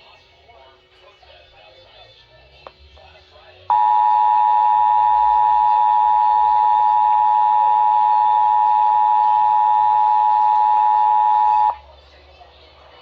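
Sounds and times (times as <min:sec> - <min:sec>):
two-tone attention signal: 0:03.7 - 0:11.8.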